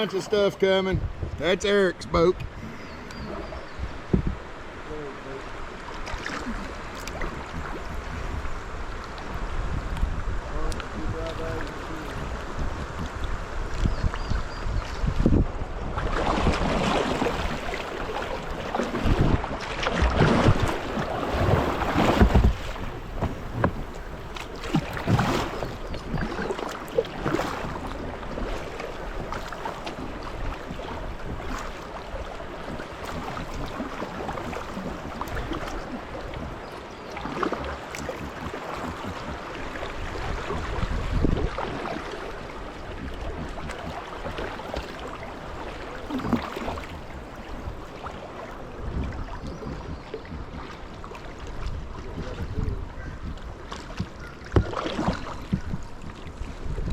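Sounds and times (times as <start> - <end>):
river water rushing: 0.0 - 0.8, 16.0 - 40.9
wind buffeting microphone: 0.0 - 5.0, 6.4 - 56.9.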